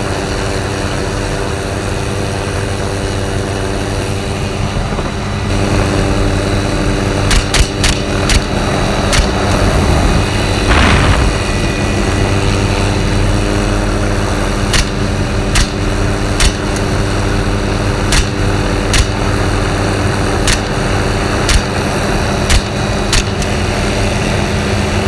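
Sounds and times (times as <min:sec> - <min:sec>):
helicopter droning: 0:00.0 - 0:25.0
rifle shots: 0:18.1 - 0:19.2.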